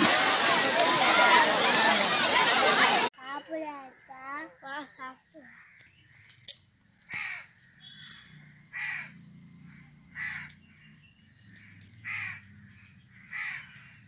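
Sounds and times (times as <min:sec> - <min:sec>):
crow cawing: 0:07.1 - 0:10.8, 0:11.5 - 0:14.0.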